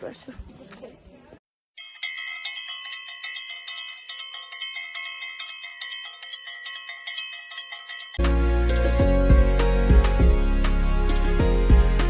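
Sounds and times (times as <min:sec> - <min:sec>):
small metal bells jangling: 0:01.8 - 0:08.2.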